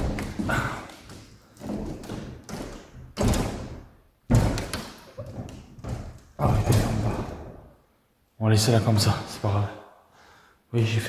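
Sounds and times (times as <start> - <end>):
window closing thuds and knocks: 1.7 - 7.5.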